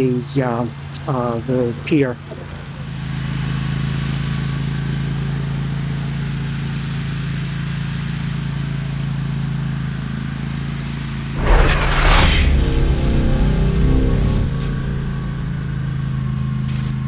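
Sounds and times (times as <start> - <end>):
loud crash: 11.4 - 17.0.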